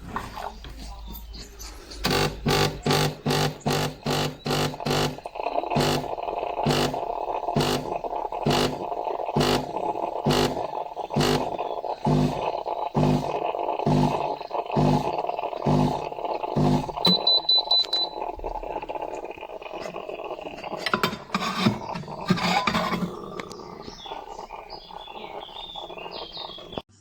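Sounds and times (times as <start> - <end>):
clicks and rattles: 1.4 - 24.6
espresso machine humming: 2.0 - 26.8.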